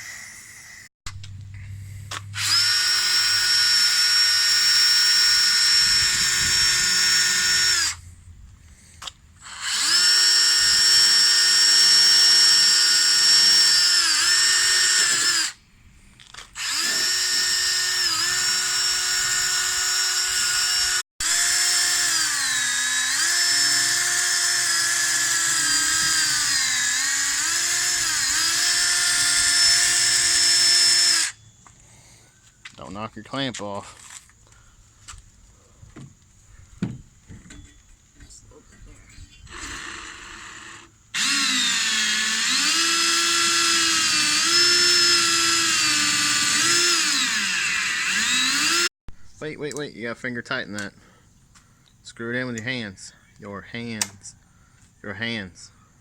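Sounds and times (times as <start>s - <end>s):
power tool motor whine: 2.1s - 8.0s, 9.4s - 15.6s, 16.3s - 31.4s, 39.4s - 48.9s.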